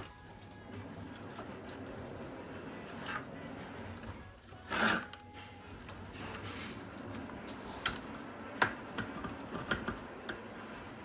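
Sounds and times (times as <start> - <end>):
parts rubbing and scraping: 0.9 - 9.7.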